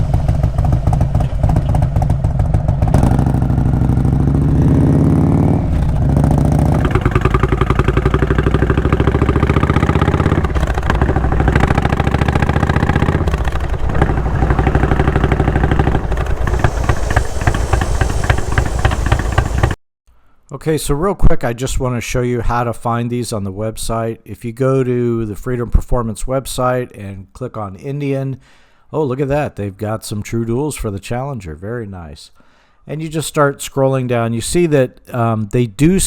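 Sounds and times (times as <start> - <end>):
motorcycle engine revving: 0.0 - 19.8.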